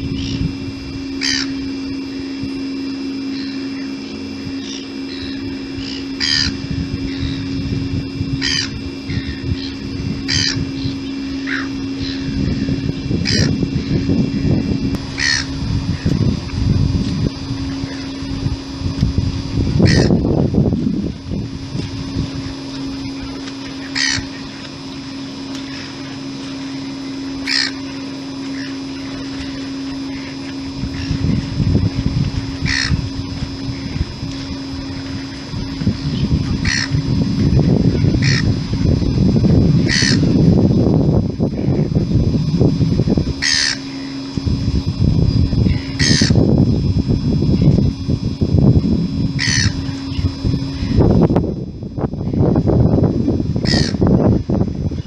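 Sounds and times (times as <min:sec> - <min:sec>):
seagulls calling: 0:00.0 - 0:07.6, 0:08.2 - 0:16.2, 0:17.4 - 0:18.4, 0:19.8 - 0:20.2, 0:22.3 - 0:39.1, 0:39.8 - 0:40.4, 0:43.3 - 0:44.4, 0:45.6 - 0:46.4, 0:49.3 - 0:51.1, 0:53.6 - 0:54.1
low rumbling: 0:00.0 - 0:55.0
steady low hum: 0:00.0 - 0:55.0.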